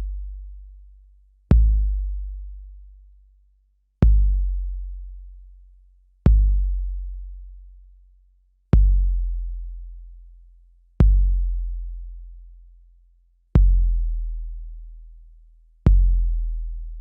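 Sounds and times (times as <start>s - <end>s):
deep kick drum booms: 8.8s - 9.1s.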